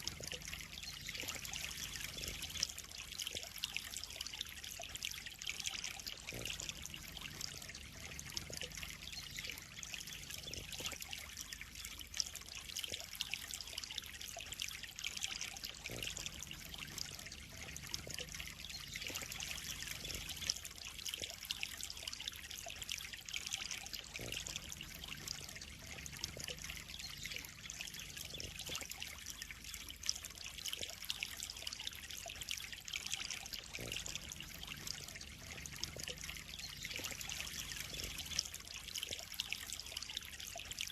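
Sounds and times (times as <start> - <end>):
water trickling into a pond: 0.0 - 40.9.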